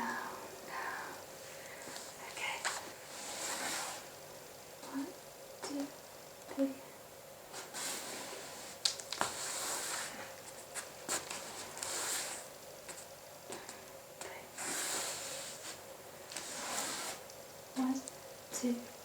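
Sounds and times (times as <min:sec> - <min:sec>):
shoes swishing across floor: 0:07.6 - 0:12.5.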